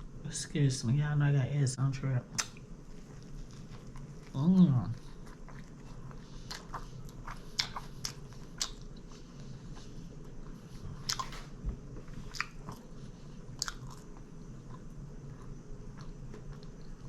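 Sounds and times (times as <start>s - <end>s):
person chewing food: 2.3s - 17.0s
mouth clicks and smacks: 2.4s - 2.6s.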